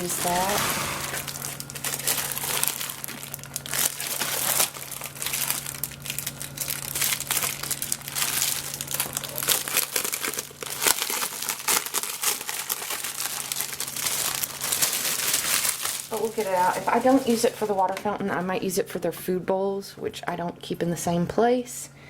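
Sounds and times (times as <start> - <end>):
plastic packaging crinkling: 0.0 - 18.5.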